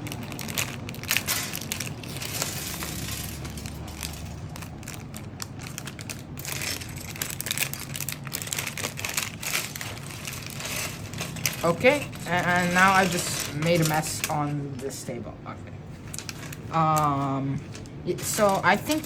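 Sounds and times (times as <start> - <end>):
plastic packaging crinkling: 0.0 - 19.0.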